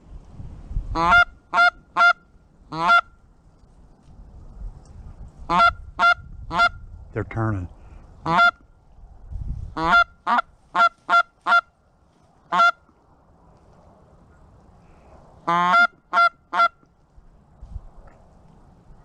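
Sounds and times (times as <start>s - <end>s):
goose call honks and clucks: 0.9s - 3.2s, 5.4s - 6.8s, 8.2s - 8.6s, 9.7s - 11.7s, 12.5s - 12.9s, 15.4s - 16.9s.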